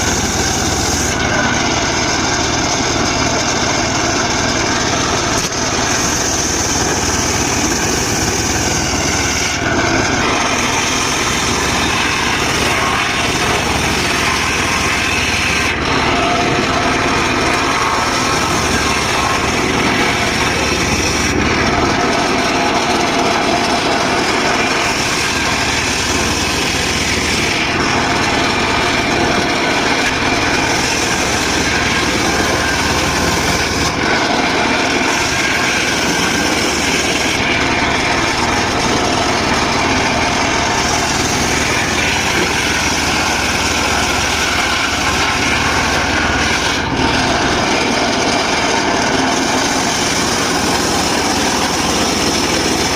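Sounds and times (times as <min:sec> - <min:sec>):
circular saw sawing wood: 0:00.0 - 0:52.9.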